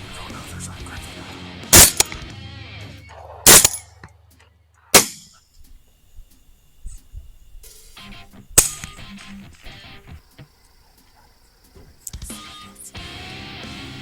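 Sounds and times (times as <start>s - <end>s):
faint background music: 0.0s - 5.1s, 5.7s - 14.0s
rifle shots with echo: 1.7s - 2.2s, 3.4s - 4.0s, 5.0s - 5.3s.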